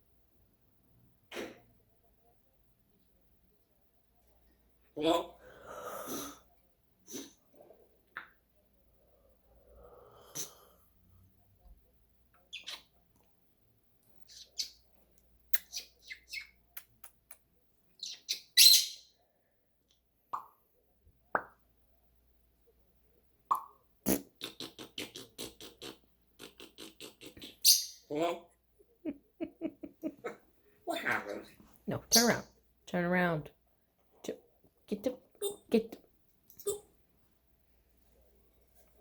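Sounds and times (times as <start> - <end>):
parrot clicks and chirps: 15.5 - 17.4.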